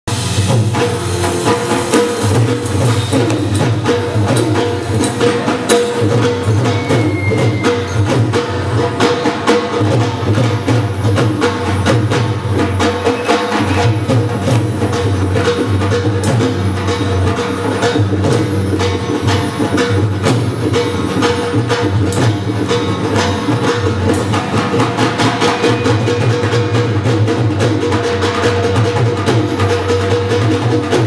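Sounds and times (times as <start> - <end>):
fast percussion beats: 0.0 - 31.0
held melody notes: 0.1 - 8.2.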